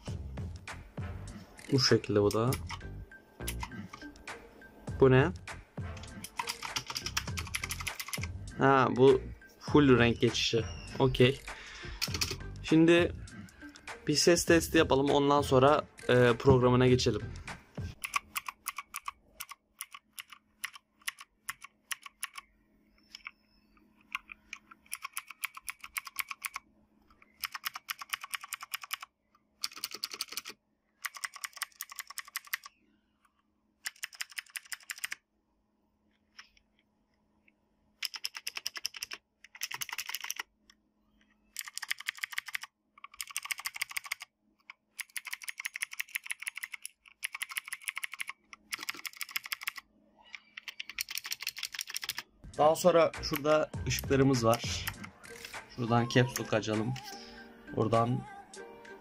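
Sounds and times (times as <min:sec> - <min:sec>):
mechanical keyboard clicking: 0:06.2 - 0:08.3, 0:12.0 - 0:12.4, 0:18.0 - 0:22.5, 0:24.1 - 0:26.6, 0:27.3 - 0:32.7, 0:33.8 - 0:35.2, 0:38.0 - 0:40.5, 0:41.6 - 0:44.3, 0:45.0 - 0:49.8, 0:50.6 - 0:52.2.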